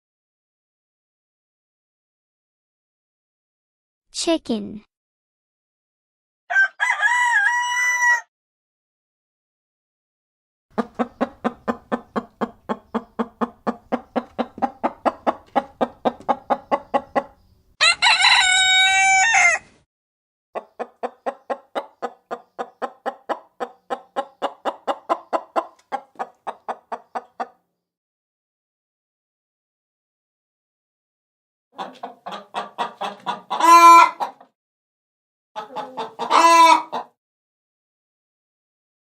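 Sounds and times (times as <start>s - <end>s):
rooster crowing: 6.5s - 8.3s, 17.8s - 19.7s
chicken clucking: 10.7s - 19.0s, 20.6s - 27.6s, 31.8s - 34.5s, 35.6s - 37.2s.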